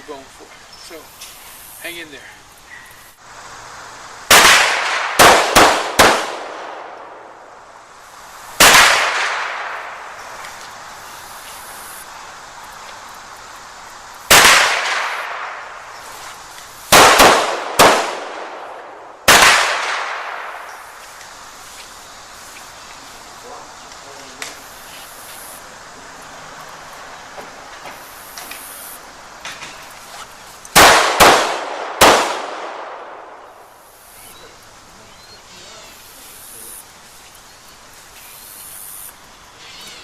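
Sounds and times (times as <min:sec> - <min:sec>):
handgun shots with ringing echo: 0:17.0 - 0:18.6.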